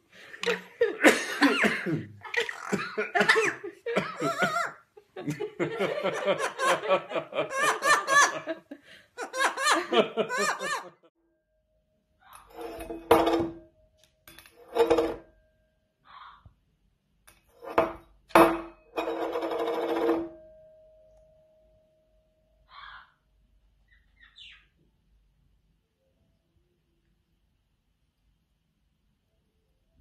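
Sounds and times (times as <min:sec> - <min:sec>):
rapid pulsed laughing: 0:00.8 - 0:11.1.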